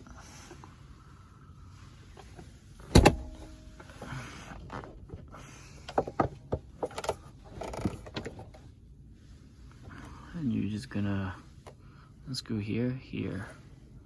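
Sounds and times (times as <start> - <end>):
latch clicks and knocks: 2.9 - 3.6
latch sharp metallic clack: 2.9 - 3.6.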